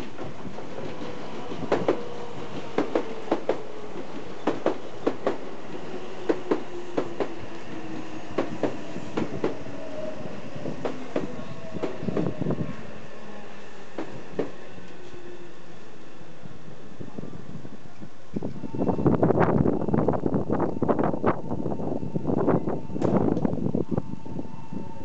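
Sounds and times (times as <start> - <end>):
train wheels clacking over rail joints: 0.0 - 7.8, 8.4 - 9.6.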